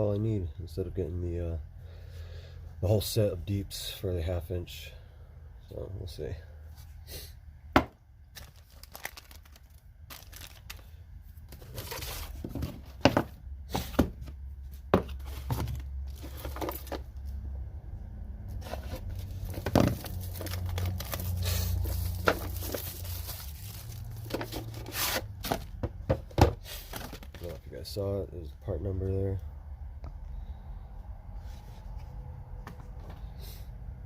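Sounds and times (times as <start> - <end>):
packaging rustling: 8.3 - 13.3, 15.0 - 17.1, 18.6 - 25.8, 26.7 - 27.6
clicks and knocks of metal and plastic: 24.2 - 27.5.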